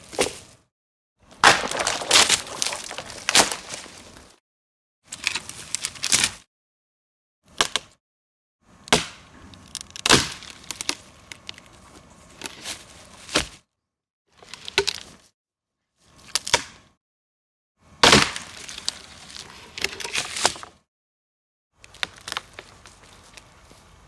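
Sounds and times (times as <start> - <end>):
wooden branches snapping: 1.4 - 4.4.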